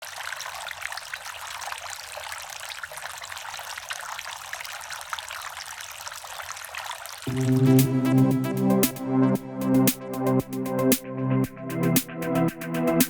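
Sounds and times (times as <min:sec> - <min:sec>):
fountain water trickling: 0:00.0 - 0:07.6.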